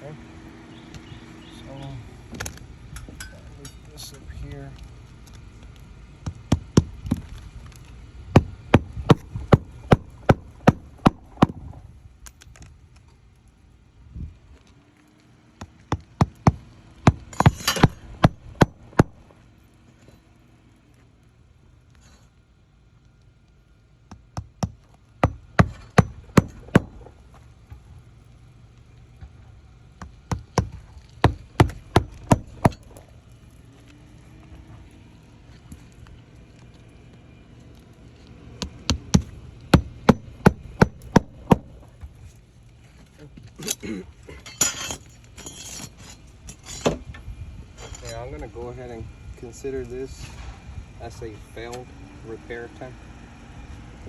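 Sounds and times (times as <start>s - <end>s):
hammer striking roof: 24.1s - 27.0s, 30.3s - 32.8s, 38.6s - 41.8s.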